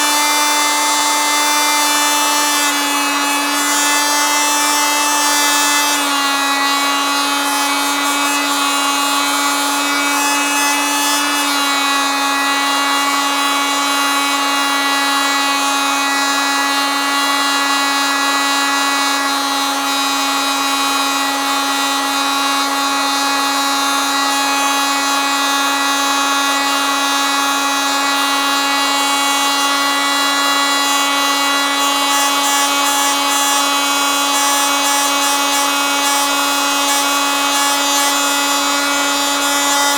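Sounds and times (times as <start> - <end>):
oscillating multitool buzzing: 22.5 - 39.9.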